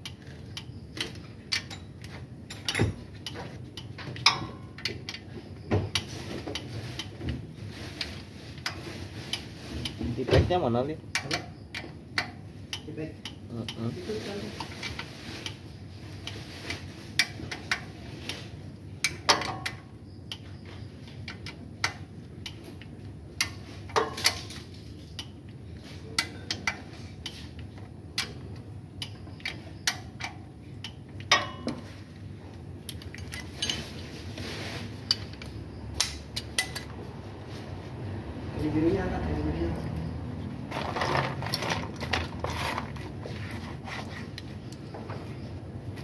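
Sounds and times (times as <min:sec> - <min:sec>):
engine parts knocking together: 0:40.7 - 0:43.2.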